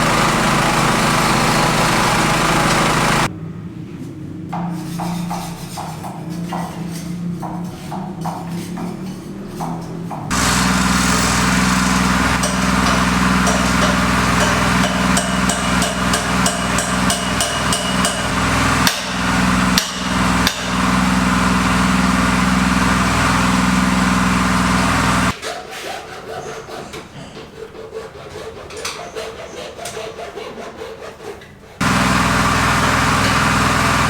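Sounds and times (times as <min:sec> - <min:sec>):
power tool motor running: 0:00.0 - 0:03.3, 0:10.3 - 0:25.4, 0:31.8 - 0:34.0
sharp hammer-like knocks: 0:12.4 - 0:20.7.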